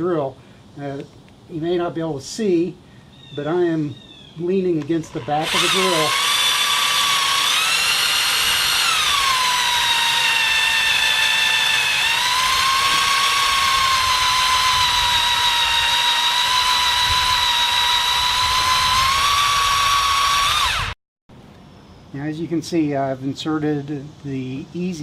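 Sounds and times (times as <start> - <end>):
power drill whining: 4.8 - 21.0.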